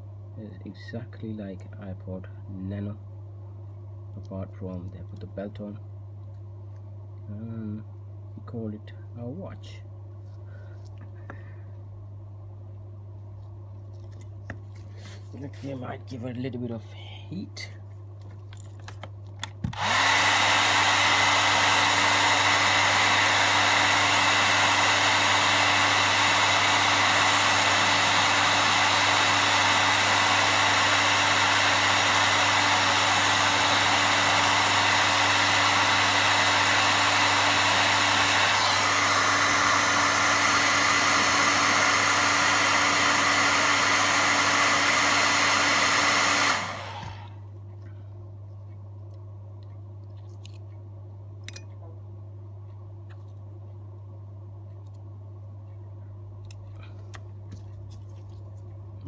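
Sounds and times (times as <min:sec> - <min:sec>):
hot air gun blowing: 0:19.8 - 0:47.3.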